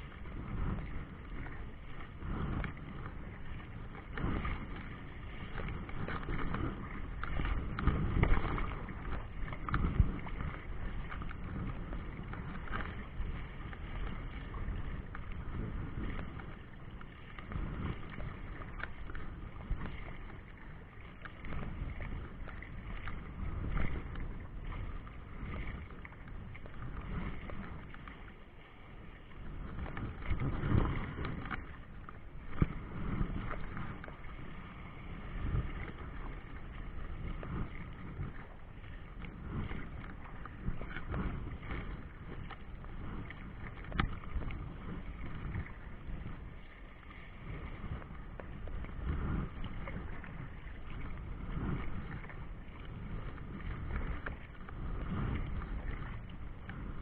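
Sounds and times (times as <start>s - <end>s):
wind gusting on microphone: 0.0s - 16.8s, 29.4s - 31.8s, 32.4s - 46.7s, 47.4s - 57.0s
choppy river water: 0.0s - 57.0s.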